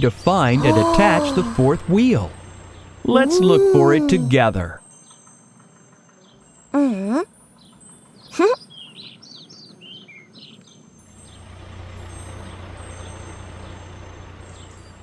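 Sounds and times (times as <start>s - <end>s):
birds chirping: 0.0s - 11.4s
truck engine running: 11.1s - 15.0s.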